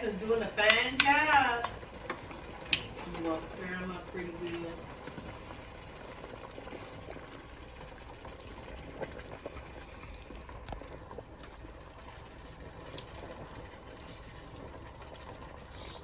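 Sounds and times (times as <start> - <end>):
liquid bubbling and sloshing: 0.0 - 16.0.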